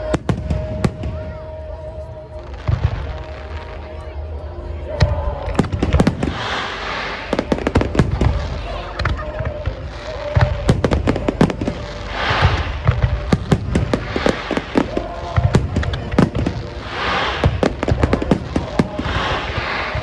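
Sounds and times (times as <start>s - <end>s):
fireworks cracks and booms: 5.5s - 8.7s, 9.7s - 20.0s
fireworks crackling hiss: 5.6s - 20.0s.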